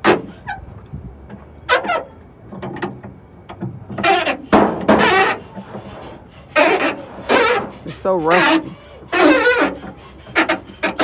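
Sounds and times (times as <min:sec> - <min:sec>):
rusty hood hinges squeaking: 0:03.9 - 0:11.0.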